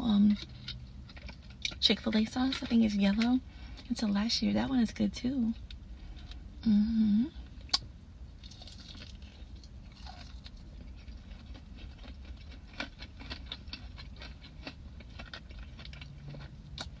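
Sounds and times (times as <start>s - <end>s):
crunchy chewing: 8.4s - 17.0s.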